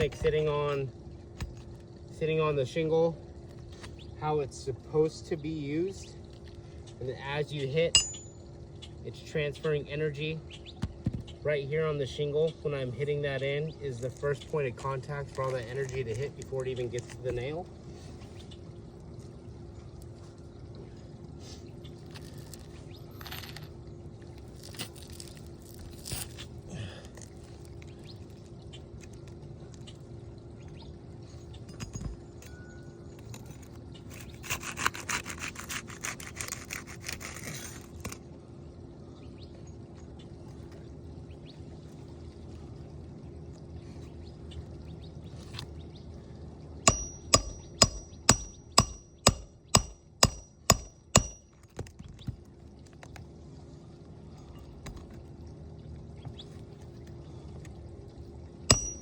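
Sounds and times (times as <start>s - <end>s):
low hum: 0.0s - 11.6s, 13.7s - 59.0s
hammer striking metal tool: 8.0s - 8.4s, 46.9s - 51.5s, 58.7s - 59.0s.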